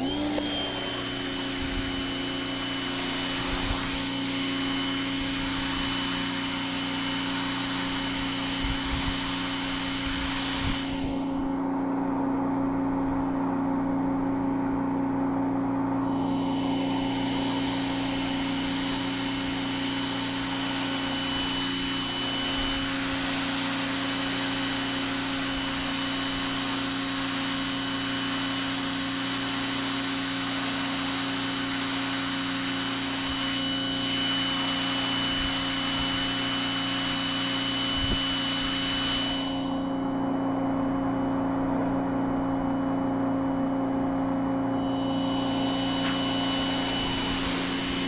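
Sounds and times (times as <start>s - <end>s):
pressure washer motor humming: 0.0s - 48.0s
water jet hissing: 44.8s - 48.0s.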